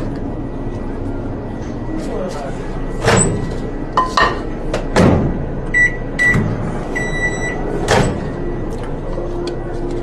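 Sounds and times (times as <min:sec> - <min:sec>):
electronic beeps: 0:05.7 - 0:07.7.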